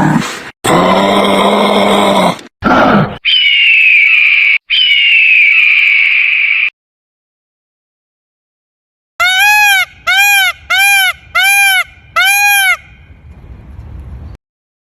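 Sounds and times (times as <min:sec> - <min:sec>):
animal calling: 0:03.1 - 0:06.7.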